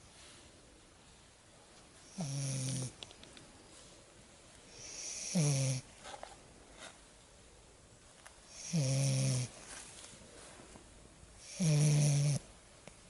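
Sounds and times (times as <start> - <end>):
puppy snoring: 2.0 - 3.0, 4.7 - 5.9, 8.5 - 9.6, 11.4 - 12.5.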